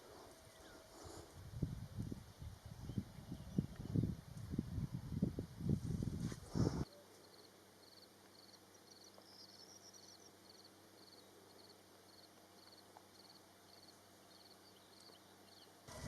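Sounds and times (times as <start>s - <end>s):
quiet rural background: 0.0s - 16.0s
cricket chirping: 7.2s - 16.0s.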